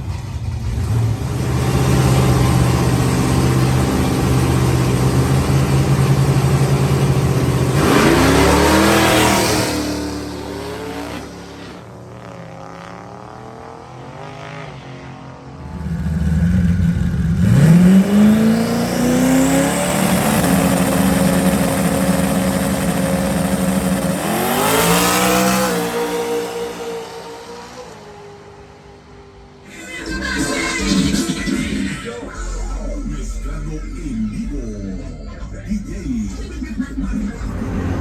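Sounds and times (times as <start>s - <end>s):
truck engine revving: 0.0s - 13.1s, 15.6s - 28.2s, 36.0s - 38.0s.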